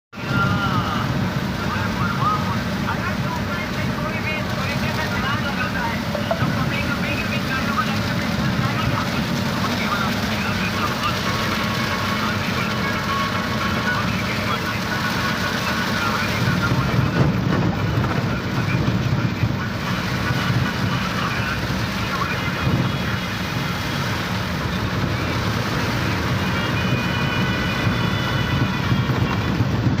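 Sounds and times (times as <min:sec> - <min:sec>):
heavy rain falling: 0:00.2 - 0:30.0.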